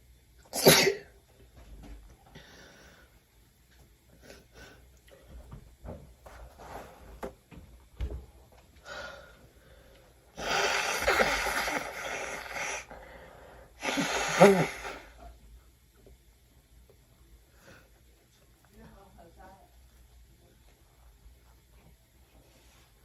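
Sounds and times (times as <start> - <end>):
faint breaths: 2.3 - 3.3, 8.8 - 15.3, 17.4 - 18.3
person wheezy gasping and sneezing: 10.4 - 15.2.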